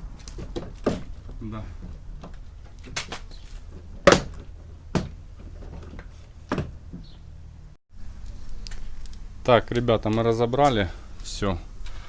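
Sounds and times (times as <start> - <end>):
plastic panel knocks and clicks: 0.4 - 7.1.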